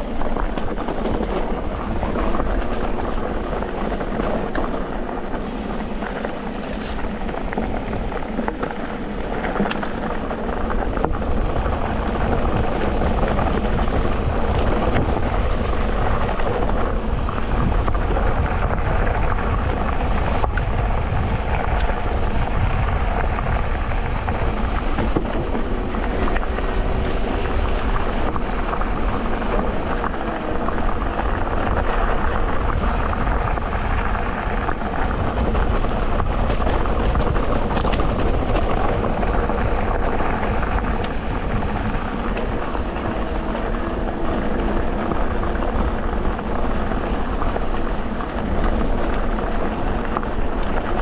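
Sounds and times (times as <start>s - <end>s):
bike rattles and knocks: 0.0s - 26.5s
bike tyres rumbling over dirt: 0.0s - 51.0s.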